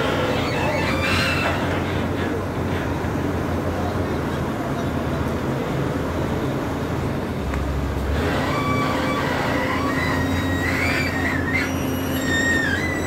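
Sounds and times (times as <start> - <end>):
high metallic squeals: 0.0 - 2.1, 8.2 - 13.0
diesel engine droning: 0.0 - 13.0.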